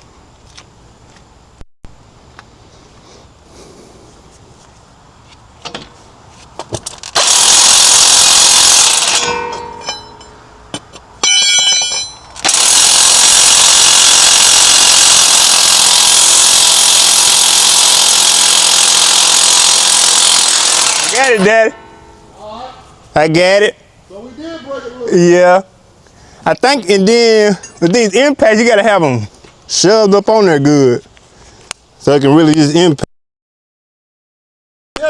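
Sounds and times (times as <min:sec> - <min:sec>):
impact wrench: 0:06.8 - 0:10.4, 0:11.2 - 0:22.3.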